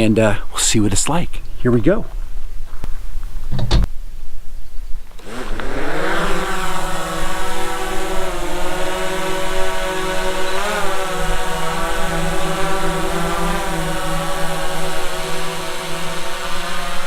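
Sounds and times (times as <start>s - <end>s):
drone propellers whining: 5.1s - 17.0s.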